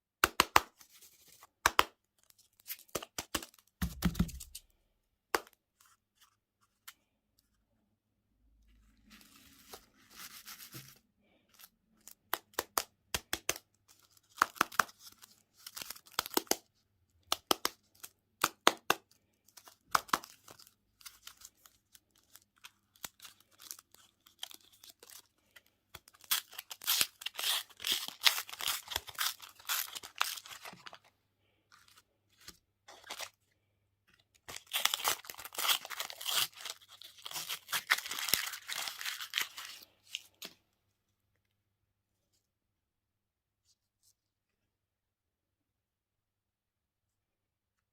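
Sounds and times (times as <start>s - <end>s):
wrapper tearing and crinkling: 26.0s - 31.0s, 34.5s - 39.9s.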